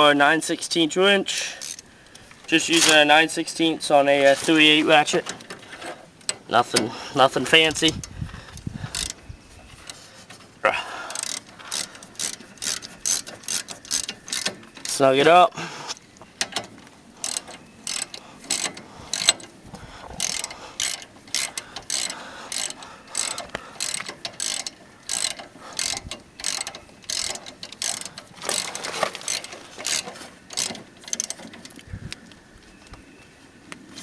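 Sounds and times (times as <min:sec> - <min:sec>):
ratchet clicking: 0:01.6 - 0:01.8, 0:08.9 - 0:09.2, 0:11.1 - 0:15.0, 0:16.4 - 0:19.5, 0:20.2 - 0:31.8.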